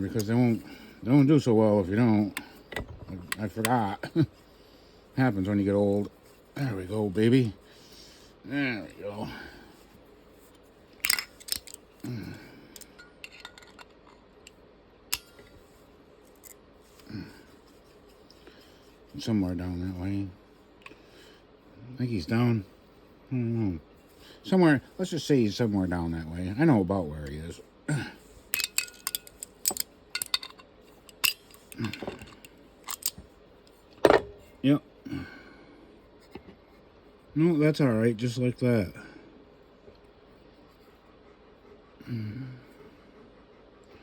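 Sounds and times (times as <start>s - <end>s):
hand tools clicking and tapping: 28.6s - 33.2s.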